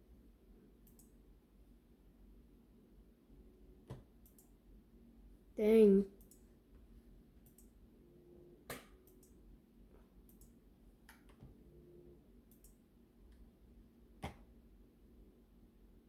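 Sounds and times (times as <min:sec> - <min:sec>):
computer clicks: 0:00.8 - 0:01.2, 0:03.9 - 0:04.6, 0:06.2 - 0:06.4, 0:07.4 - 0:07.7, 0:08.7 - 0:09.4, 0:10.3 - 0:11.4, 0:12.5 - 0:12.8.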